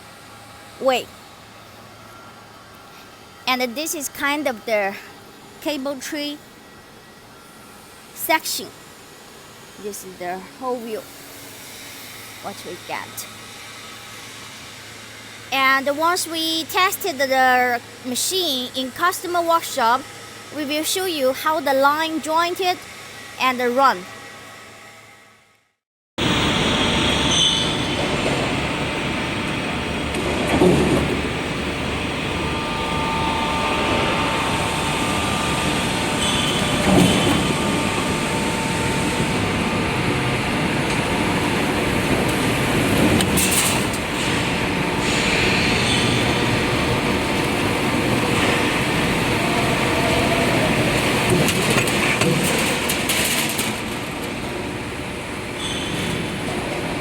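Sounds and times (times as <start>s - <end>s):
roll forming machine rumble: 26.2s - 57.0s.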